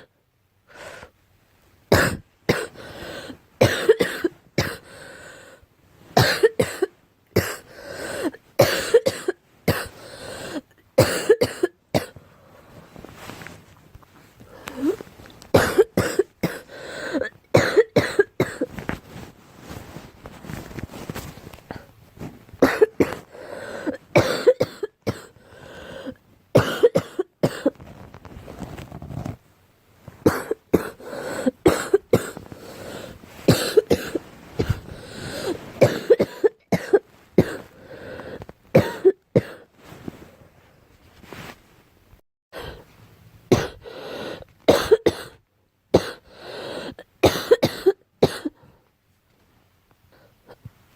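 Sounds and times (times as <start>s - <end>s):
girl coughing: 1.9s - 2.8s, 3.6s - 4.9s, 6.2s - 12.2s, 15.6s - 18.7s, 22.6s - 25.4s, 26.6s - 27.7s, 30.3s - 37.7s, 38.8s - 39.7s, 43.5s - 43.8s, 44.7s - 45.4s, 46.0s - 46.2s, 46.9s - 48.6s.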